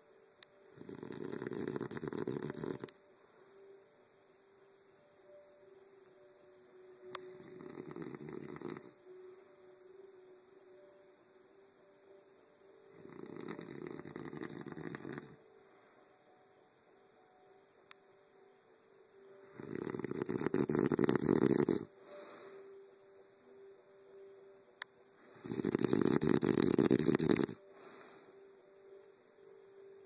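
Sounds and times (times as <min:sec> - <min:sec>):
quiet breathing: 0:00.0 - 0:04.6, 0:06.7 - 0:11.1, 0:11.8 - 0:17.6, 0:19.2 - 0:24.4, 0:25.1 - 0:30.0
man snoring loudly: 0:00.8 - 0:02.9, 0:07.4 - 0:09.0, 0:13.0 - 0:15.4, 0:19.6 - 0:21.9, 0:25.3 - 0:27.6.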